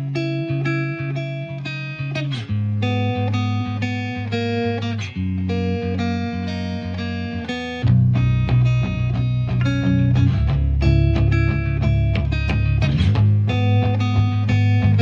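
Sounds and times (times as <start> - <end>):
plucked guitar music: 0.0 - 15.0
steady bass line: 5.0 - 15.0.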